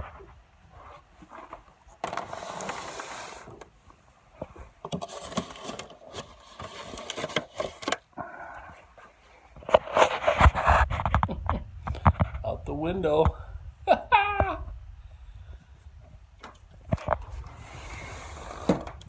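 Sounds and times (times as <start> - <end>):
scrape: 2.2 - 3.6, 5.0 - 7.7, 8.8 - 11.1, 17.4 - 19.0.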